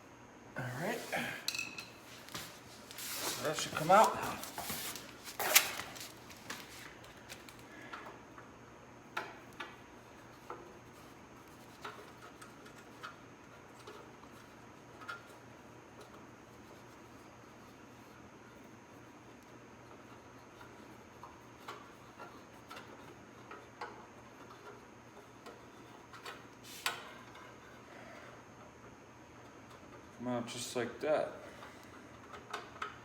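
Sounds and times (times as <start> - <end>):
faint steady hum: 0.0 - 33.0.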